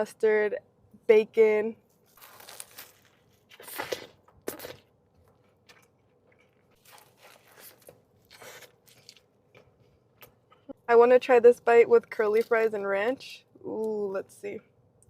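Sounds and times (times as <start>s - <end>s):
soft chewing: 1.8s - 10.8s
biting into food: 2.1s - 9.3s.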